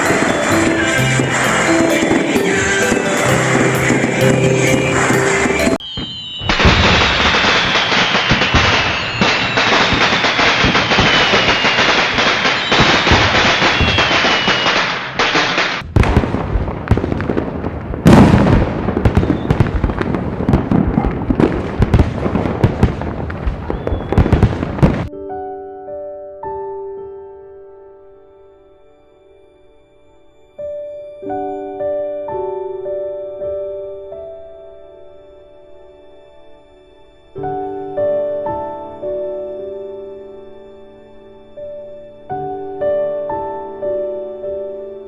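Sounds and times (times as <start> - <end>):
fireworks crackling and popping: 0.0 - 25.1
loud firework bangs: 0.0 - 25.1.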